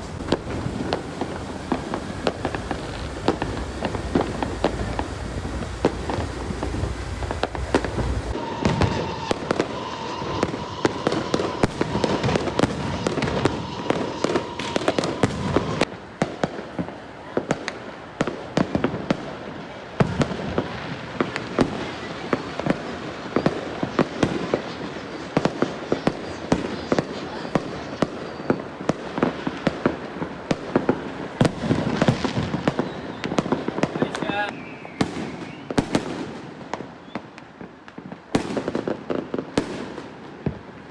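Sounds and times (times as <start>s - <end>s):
steady whistling tone: 0.0s - 15.3s, 34.3s - 35.8s
fireworks and firecrackers crackling: 0.0s - 40.9s.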